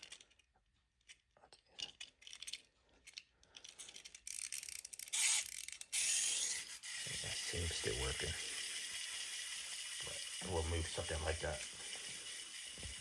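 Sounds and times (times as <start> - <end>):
plastic toy clicks: 1.8 - 7.1
clockwork ratcheting whir: 3.9 - 13.0.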